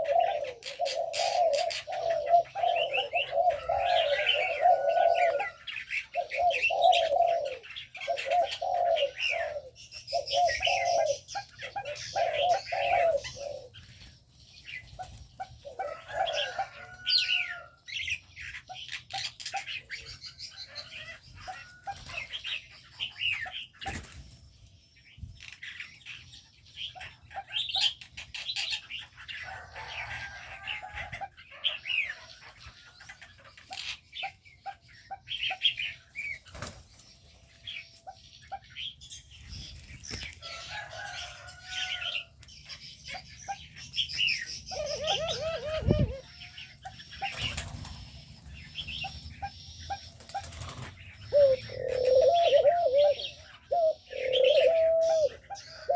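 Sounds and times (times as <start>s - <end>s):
birds chirping: 0.0s - 55.9s
wings flapping: 36.4s - 37.0s, 47.2s - 48.2s, 50.1s - 51.0s.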